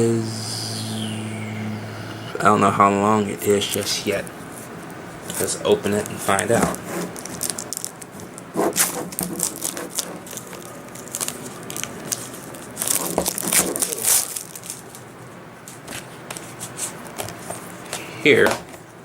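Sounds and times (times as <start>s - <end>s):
packaging wrapping crinkling and tearing: 5.3s - 15.1s.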